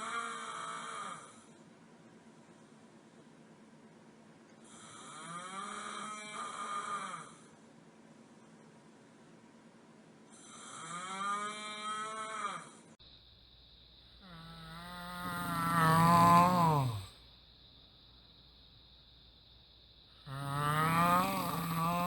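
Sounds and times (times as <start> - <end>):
man snoring with moo-like sound: 0.0 - 1.6, 4.6 - 7.6, 10.3 - 13.0, 14.2 - 17.2, 20.2 - 22.0.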